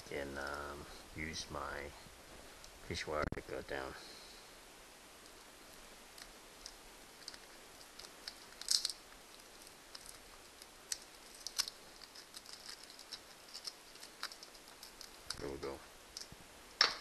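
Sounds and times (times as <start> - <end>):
steel fish tape clicking: 6.1 - 15.5
fish tape clatter: 6.6 - 15.5.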